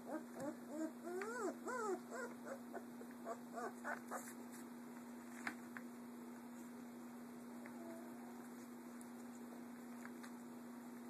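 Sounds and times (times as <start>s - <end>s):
puppies whining: 0.0s - 4.4s.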